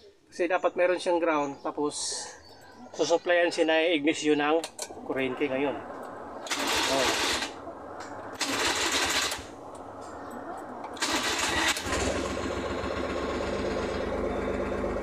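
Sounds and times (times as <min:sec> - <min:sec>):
engine cranking: 0:05.9 - 0:15.0
engine idling: 0:05.9 - 0:15.0.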